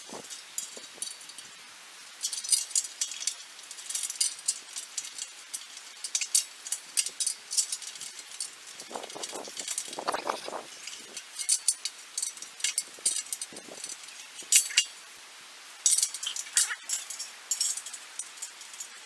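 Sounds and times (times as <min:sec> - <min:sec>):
metal bolts clinking and rattling: 0:00.0 - 0:15.2, 0:15.8 - 0:19.0.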